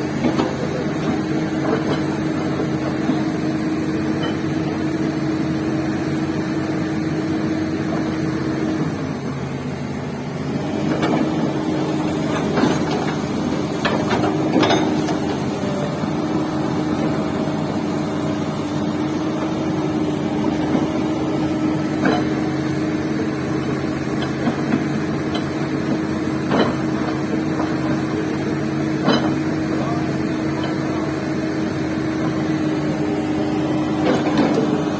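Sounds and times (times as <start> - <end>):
excavator diesel engine running: 0.0 - 34.9
metallic knocks and clanks: 12.4 - 15.2.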